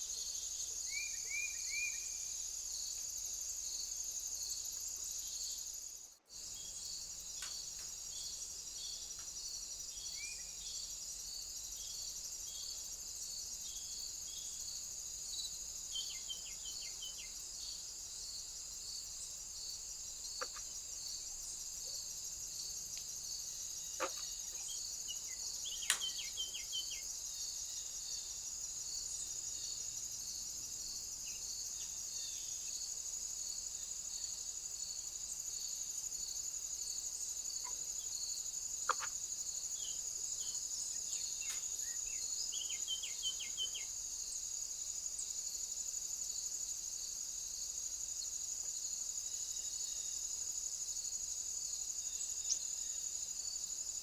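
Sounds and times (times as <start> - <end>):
crickets trilling: 0.0 - 54.0
bird chirps: 0.9 - 2.2, 24.0 - 27.1, 39.8 - 44.0.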